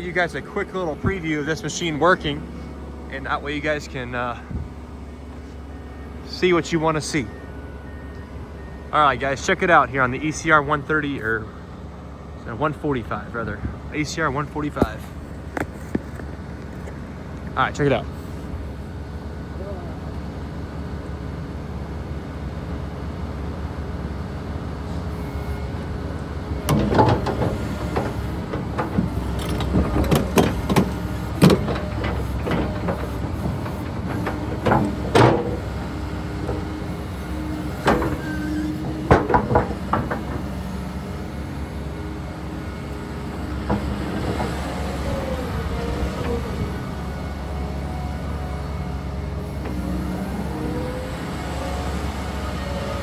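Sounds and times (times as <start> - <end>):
excavator diesel engine running: 0.0 - 53.0
metallic clanks and knocks: 26.6 - 41.4, 43.2 - 46.8.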